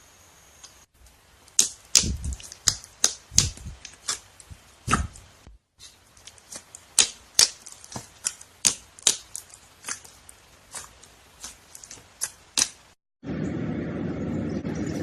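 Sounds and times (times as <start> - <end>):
slime air pockets popping: 1.5 - 5.3
steady low noise: 13.2 - 15.0.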